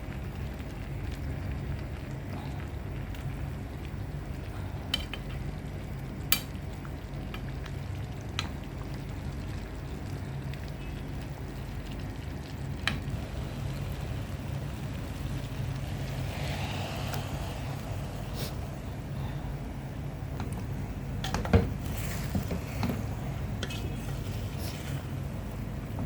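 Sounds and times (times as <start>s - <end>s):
faint frying: 0.0s - 26.0s.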